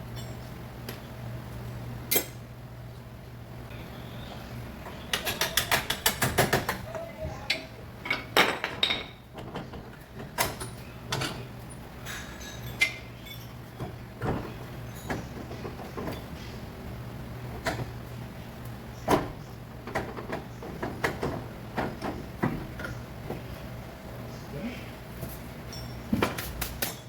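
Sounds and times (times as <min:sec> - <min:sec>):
steady low hum: 0:00.0 - 0:27.0
metal clinks and knocks: 0:12.0 - 0:13.6, 0:25.6 - 0:26.3.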